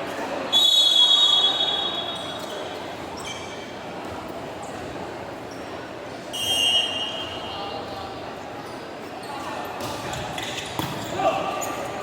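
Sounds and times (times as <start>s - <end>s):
gymnasium hubbub: 0.0s - 12.0s
referee's whistle blast: 6.4s - 7.4s.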